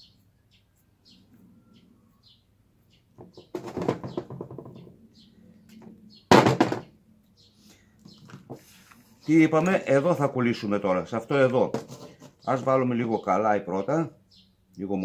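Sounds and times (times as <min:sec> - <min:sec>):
small bird chirping: 0:00.0 - 0:09.9, 0:12.0 - 0:15.0
rustling and clattering: 0:03.2 - 0:04.9, 0:11.7 - 0:12.5.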